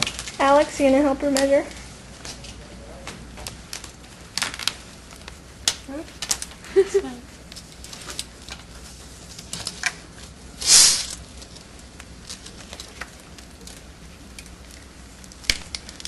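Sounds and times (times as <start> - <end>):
hissing rustle: 3.5 - 16.0.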